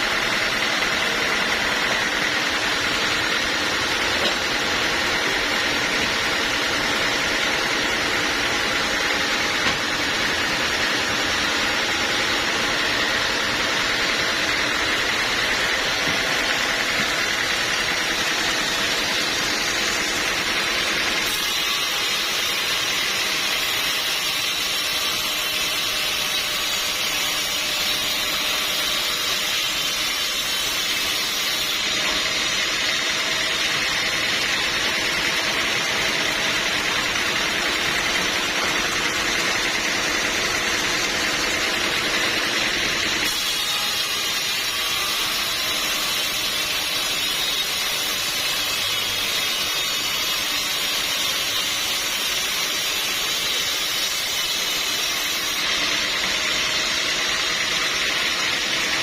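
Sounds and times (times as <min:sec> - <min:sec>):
sawmill machinery drone and hiss: 0:00.0 - 0:59.0.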